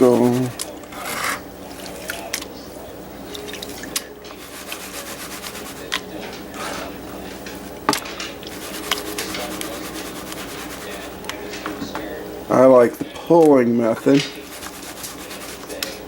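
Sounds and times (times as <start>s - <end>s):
wet gravel sloshing in a pan: 8.5s - 11.2s.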